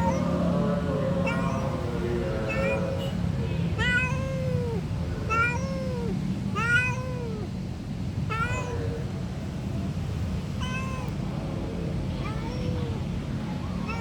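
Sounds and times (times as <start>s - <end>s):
cat meowing: 0.0s - 0.6s, 1.2s - 7.6s, 8.2s - 9.2s, 10.5s - 11.2s, 12.1s - 14.0s
steady low hum: 0.0s - 6.6s.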